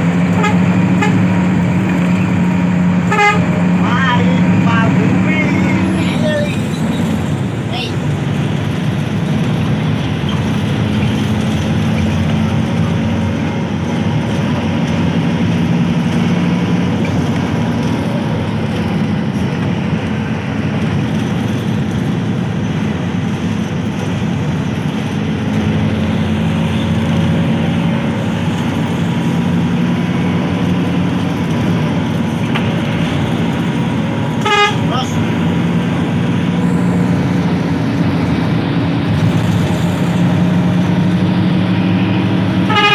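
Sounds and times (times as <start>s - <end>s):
bus engine and road noise: 0.0s - 42.9s
horn toot: 34.4s - 34.9s, 42.6s - 42.9s.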